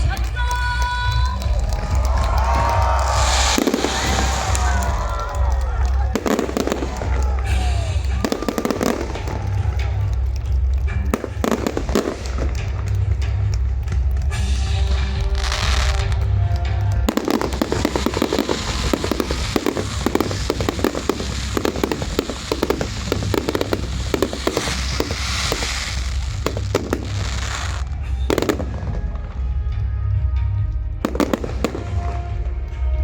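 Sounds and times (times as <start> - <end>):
background music: 0.0 - 33.0
fireworks bangs and crackling: 0.0 - 33.0.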